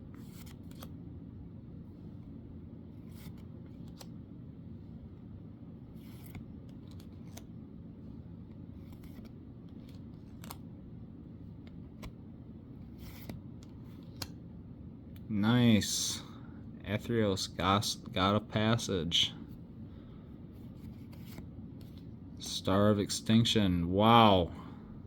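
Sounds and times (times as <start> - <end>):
steady low hum: 0.0 - 25.0
cards swishing and clicking: 0.1 - 1.0, 3.0 - 4.2, 5.9 - 7.5, 8.1 - 10.7, 11.5 - 14.4, 20.5 - 22.6.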